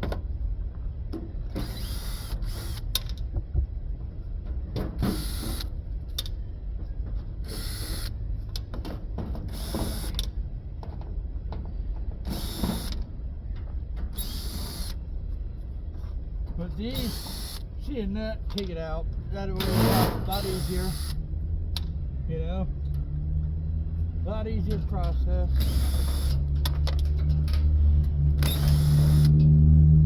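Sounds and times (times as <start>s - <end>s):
steady low rumble: 0.0s - 30.0s
wrench clicking and creaking: 1.5s - 3.3s, 9.4s - 10.4s, 16.8s - 17.8s, 19.5s - 21.2s, 24.7s - 29.6s.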